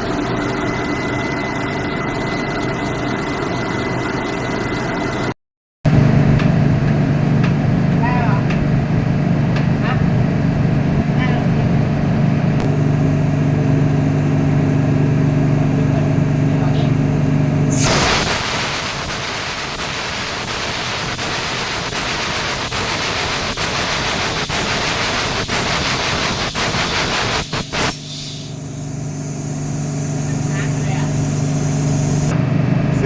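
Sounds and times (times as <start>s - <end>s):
engine room machinery hum: 0.0s - 33.0s
hissing high-pressure air: 17.7s - 32.3s.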